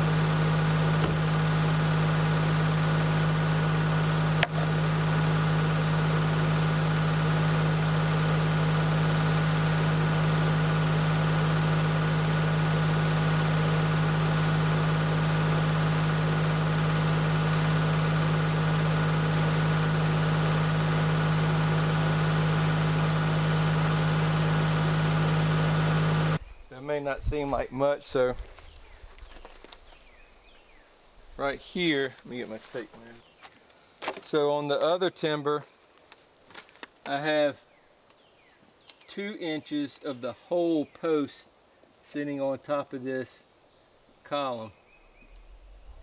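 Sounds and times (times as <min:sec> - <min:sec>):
motor-driven machine running: 0:00.0 - 0:26.4.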